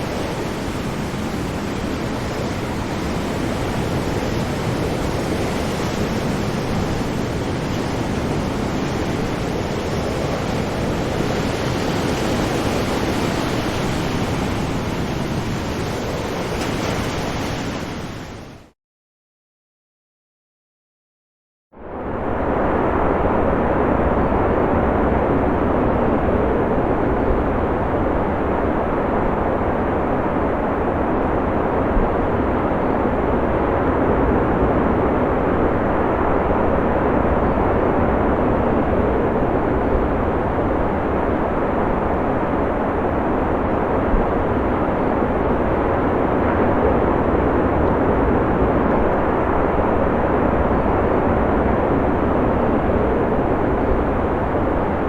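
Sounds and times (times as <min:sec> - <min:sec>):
ocean waves breaking: 0:00.0 - 0:18.7.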